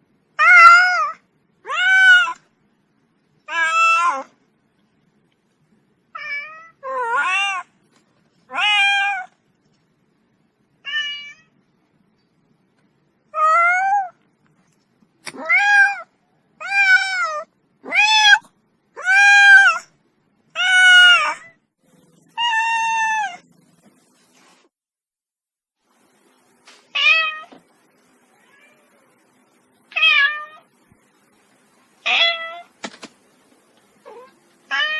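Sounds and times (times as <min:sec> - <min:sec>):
cat meowing: 0:00.4 - 0:02.4, 0:03.5 - 0:04.3, 0:06.1 - 0:07.7, 0:08.5 - 0:09.4, 0:10.8 - 0:11.6, 0:13.3 - 0:14.2, 0:15.3 - 0:19.9, 0:20.6 - 0:21.6, 0:22.3 - 0:23.5, 0:28.3 - 0:29.2, 0:29.9 - 0:30.7, 0:32.0 - 0:32.8, 0:34.0 - 0:34.9.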